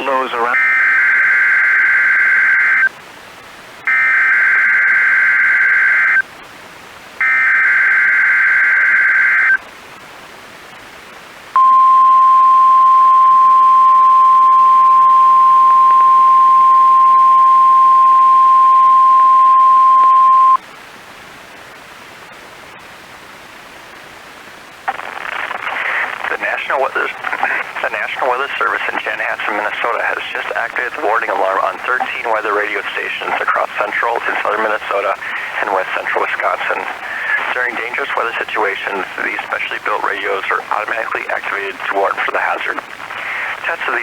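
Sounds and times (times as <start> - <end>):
faint radio hiss: 0.0 - 44.0
screechy data bursts: 0.6 - 2.9, 3.9 - 6.2, 7.2 - 9.6
steady warning alarm tone: 0.6 - 2.9, 3.9 - 6.2, 7.2 - 9.6, 11.6 - 20.6.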